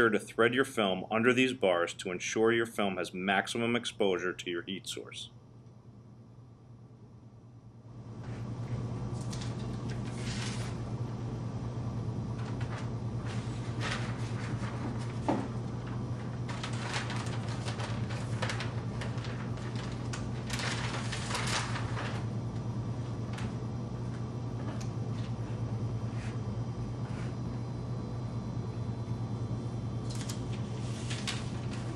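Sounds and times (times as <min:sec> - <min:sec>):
steady low hum: 0:00.0 - 0:31.9
plastic film rustling: 0:09.1 - 0:10.8, 0:12.4 - 0:22.4, 0:30.0 - 0:31.9.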